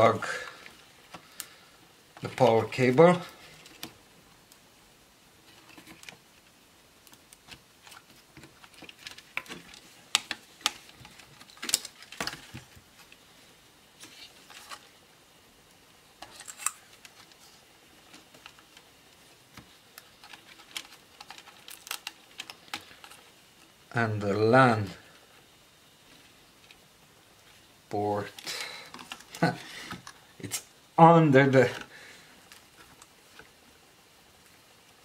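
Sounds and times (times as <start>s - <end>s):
plastic parts clicking: 7.0s - 12.7s, 19.6s - 23.2s.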